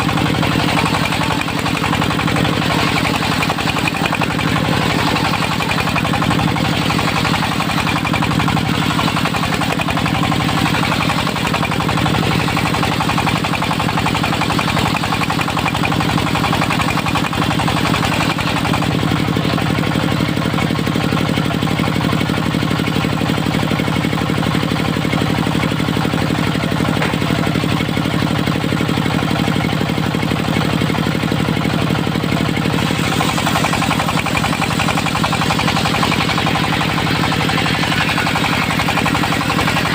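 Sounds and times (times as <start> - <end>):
circular sawmill: 0.0 - 39.9
diesel engine running: 0.0 - 39.9.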